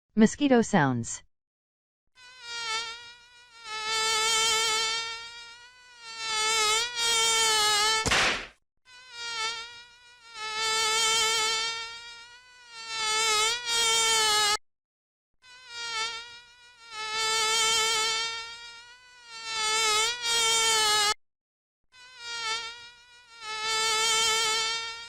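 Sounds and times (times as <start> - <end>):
mosquito wingbeat whine: 2.2 - 7.2, 22.0 - 25.0.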